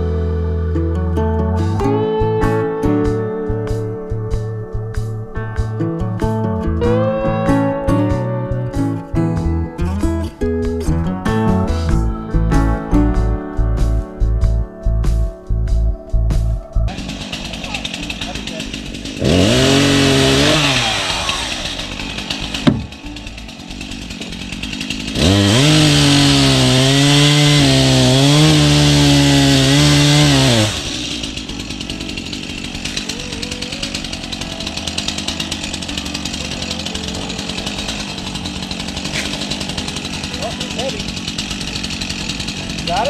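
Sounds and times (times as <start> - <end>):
engine revving: 16.2 - 43.0
sharp knock: 22.6 - 23.1.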